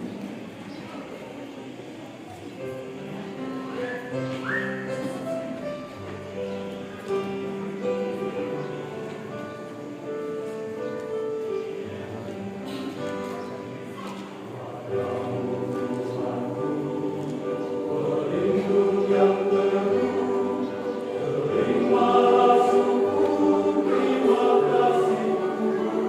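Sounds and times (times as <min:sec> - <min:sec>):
choir singing: 0:13.5 - 0:26.0.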